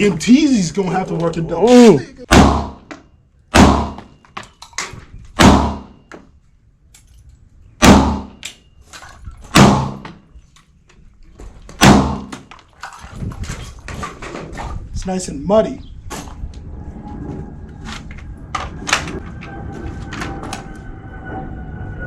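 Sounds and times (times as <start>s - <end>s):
loud echoing gunshots: 2.3s - 2.9s, 3.5s - 4.1s, 5.4s - 6.0s, 7.8s - 8.4s, 9.6s - 10.0s, 11.8s - 12.3s.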